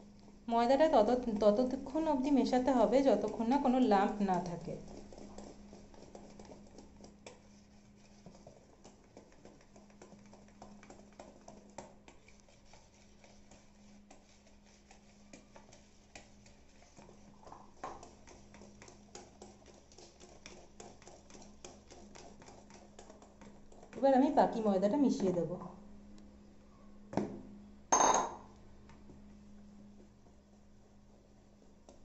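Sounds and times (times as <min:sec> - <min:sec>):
utensil scraping a bowl: 0:01.0 - 0:24.0.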